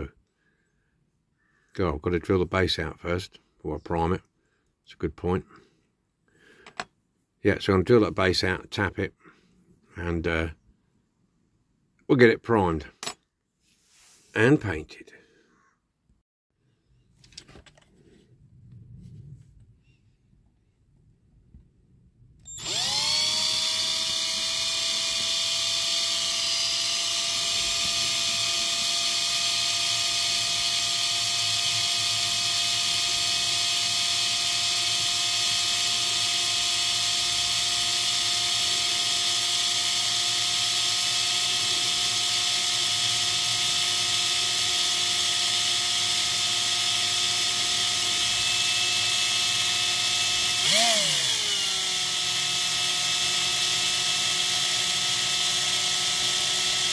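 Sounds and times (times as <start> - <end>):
small electric drill running: 22.4 - 56.9.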